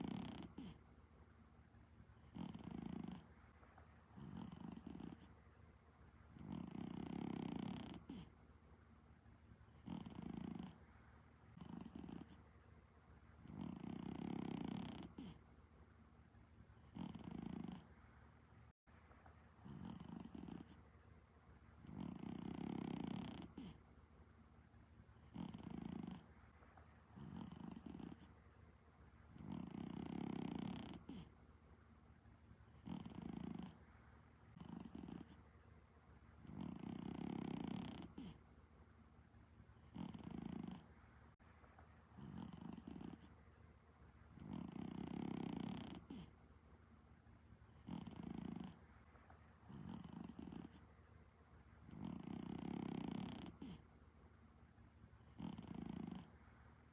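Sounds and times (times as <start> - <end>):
cat snoring: 0.0 - 0.9, 2.2 - 3.4, 4.1 - 5.4, 6.3 - 8.4, 9.7 - 10.9, 11.5 - 12.5, 13.4 - 15.5, 16.8 - 18.1, 19.6 - 20.8, 21.8 - 23.8, 25.2 - 26.4, 27.1 - 28.4, 29.3 - 31.4, 32.7 - 33.9, 34.5 - 35.4, 36.4 - 38.4, 39.8 - 41.0, 42.2 - 43.4, 44.3 - 46.4, 47.7 - 48.9, 49.6 - 50.9, 51.8 - 53.9, 55.2 - 56.4.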